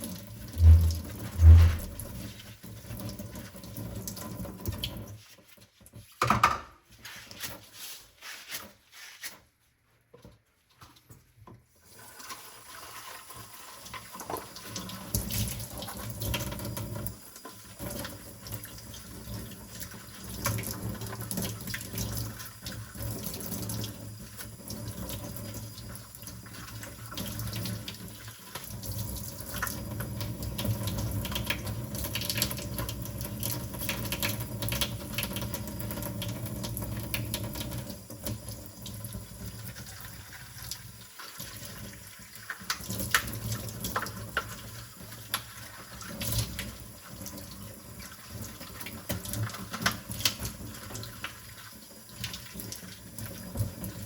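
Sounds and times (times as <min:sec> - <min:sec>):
tap running into a sink: 0:00.4 - 0:05.1.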